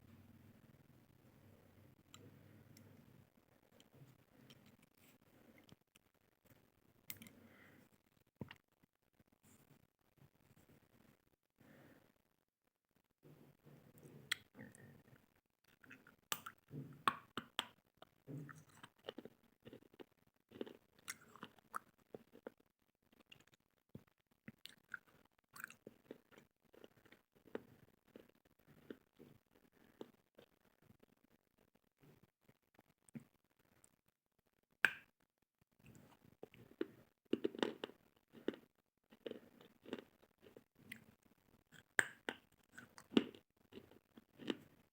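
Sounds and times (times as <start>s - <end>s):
soft chewing: 0.5s - 12.0s, 13.2s - 34.1s, 35.8s - 44.9s
crunchy chewing: 18.0s - 23.6s, 35.9s - 44.8s.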